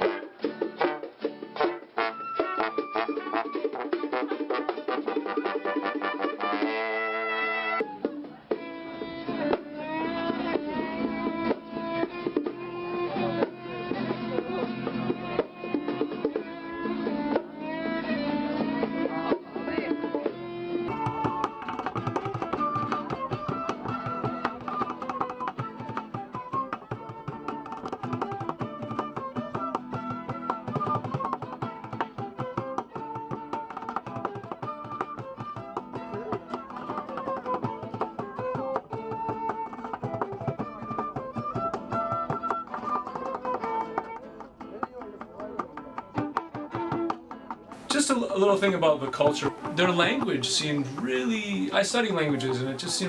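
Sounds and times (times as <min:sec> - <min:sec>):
plucked guitar: 0:00.0 - 0:53.0
bowed violin: 0:05.0 - 0:44.2.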